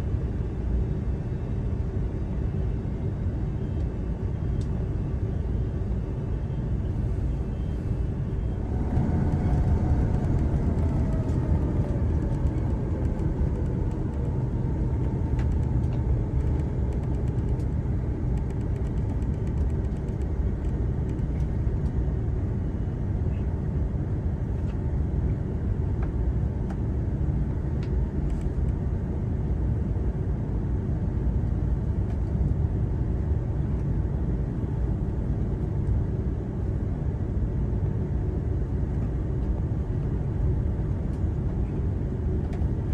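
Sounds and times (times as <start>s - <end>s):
aircraft cabin engine rumble: 0.0s - 42.9s
engine whine falling in pitch: 6.7s - 17.5s.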